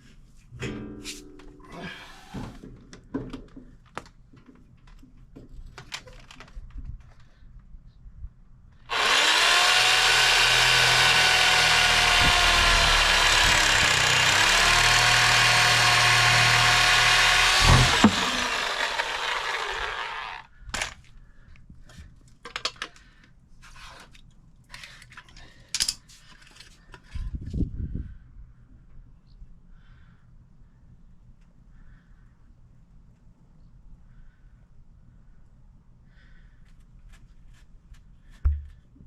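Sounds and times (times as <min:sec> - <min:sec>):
power tool motor running: 0:08.9 - 0:20.5.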